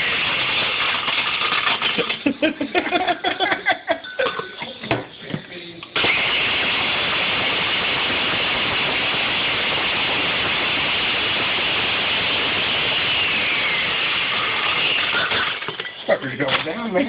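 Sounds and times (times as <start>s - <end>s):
blender motor whirring: 0.0s - 2.2s, 6.0s - 15.9s.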